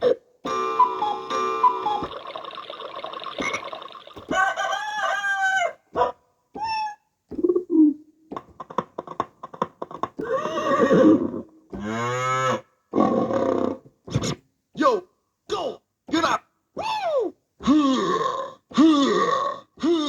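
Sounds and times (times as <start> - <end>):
pitch-bending calls: 0.5 - 4.7.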